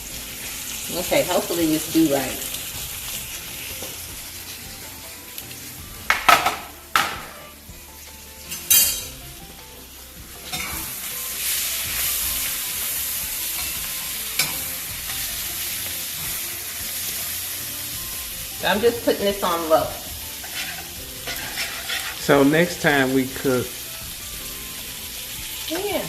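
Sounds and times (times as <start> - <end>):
food sizzling in a frying pan: 0.0 - 26.0
sharp knocks: 6.1 - 7.4.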